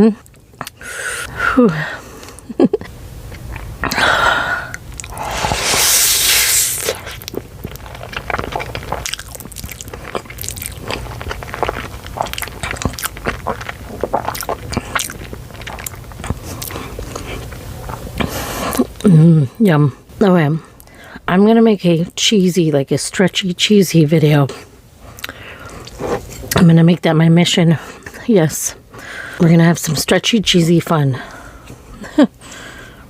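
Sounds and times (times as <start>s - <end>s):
chewing with wet mouth clicks: 4.7s - 5.2s, 6.9s - 19.1s, 25.2s - 26.6s
noodle slurp: 5.0s - 10.3s.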